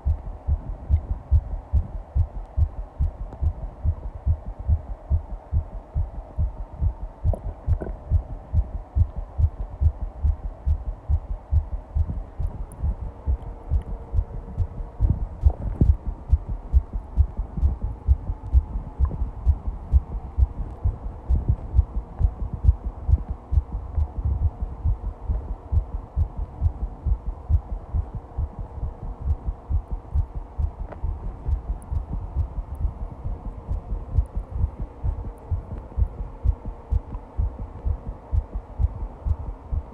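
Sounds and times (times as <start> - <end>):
faint steady hum: 0.0 - 39.9
heart beating fast: 0.0 - 39.9.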